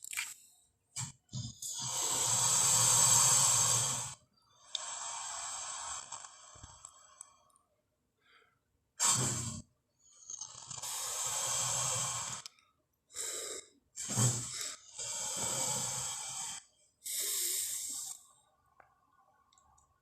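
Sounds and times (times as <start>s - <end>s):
creature hissing breath: 1.6s - 6.8s, 10.6s - 12.4s, 13.2s - 18.2s.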